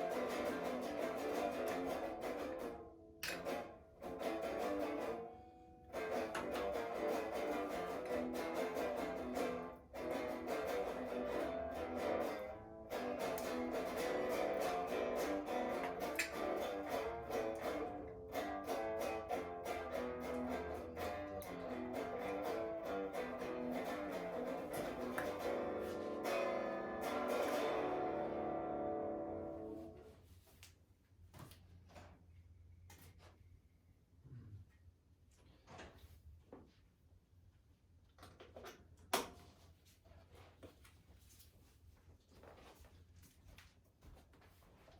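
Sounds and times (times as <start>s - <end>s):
guitar picked and strummed: 0.0s - 30.0s.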